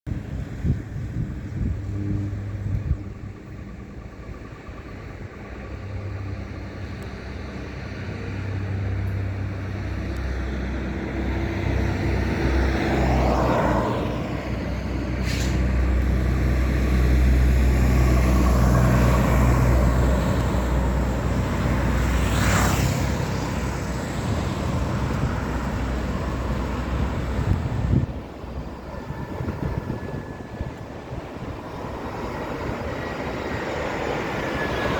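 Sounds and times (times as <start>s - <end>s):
jet airliner engine noise: 0.1s - 34.9s.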